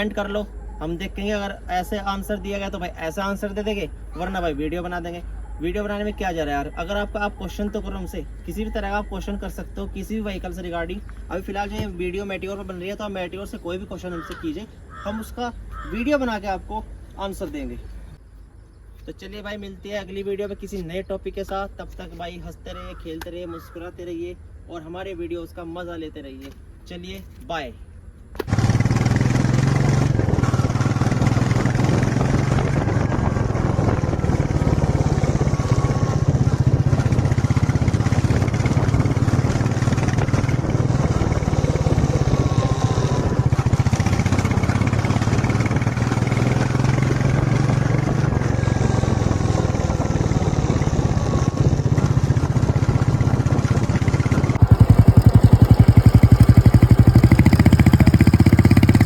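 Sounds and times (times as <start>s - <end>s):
motorcycle engine running: 28.4s - 59.0s.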